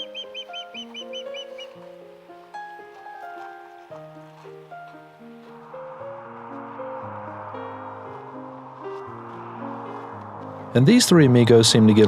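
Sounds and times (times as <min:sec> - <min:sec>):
ospreys chirping: 0:00.0 - 0:01.8
music of slow held chords: 0:00.0 - 0:12.0.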